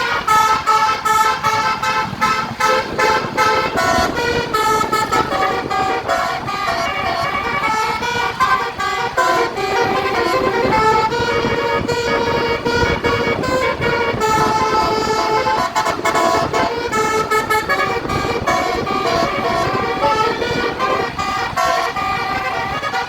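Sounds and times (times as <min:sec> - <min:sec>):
steady low noise: 0:00.0 - 0:22.6
multi-tone musical air horn: 0:00.0 - 0:23.0.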